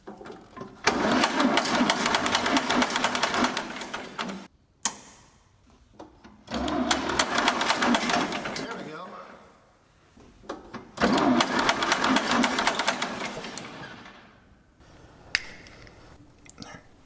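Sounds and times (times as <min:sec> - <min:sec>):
rapid mechanical clicking: 0:00.9 - 0:05.4, 0:06.2 - 0:08.7, 0:11.0 - 0:13.8
single sharp click: 0:04.8 - 0:05.5.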